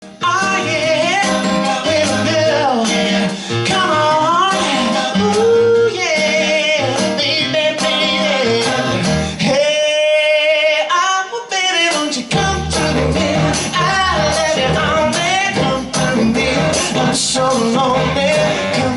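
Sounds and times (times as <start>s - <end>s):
band playing: 0.0s - 9.4s, 12.2s - 18.9s
male vocal group singing: 0.1s - 18.9s
low bass line: 12.4s - 18.9s.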